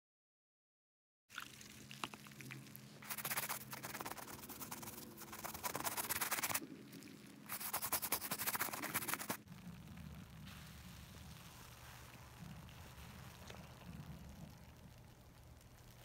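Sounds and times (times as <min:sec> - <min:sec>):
brush scrubbing a sneaker: 0:03.0 - 0:06.6, 0:07.5 - 0:09.4.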